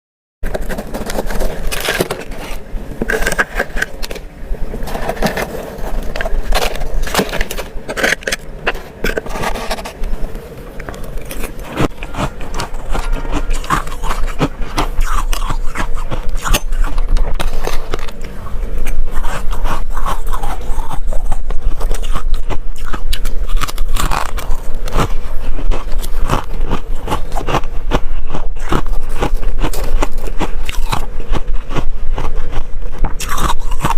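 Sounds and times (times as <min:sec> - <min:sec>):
crunching frost with teeth: 0:00.4 - 0:33.9
frost scraping: 0:00.4 - 0:33.9.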